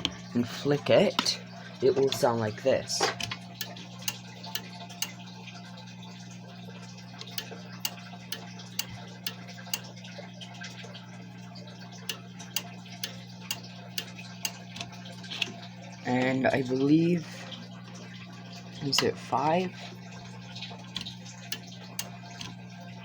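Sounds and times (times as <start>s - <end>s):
low electrical hum: 0.0s - 23.0s
alarm bell circuit clicking: 2.0s - 6.3s, 7.0s - 11.0s, 11.7s - 15.5s, 20.1s - 22.9s.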